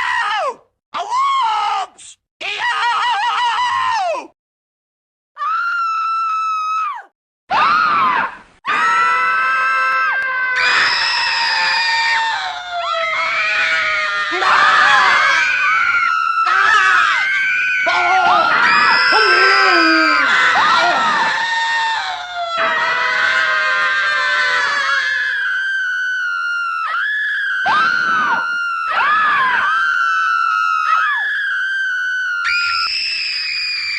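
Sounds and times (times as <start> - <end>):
person screaming: 17.9 - 25.4.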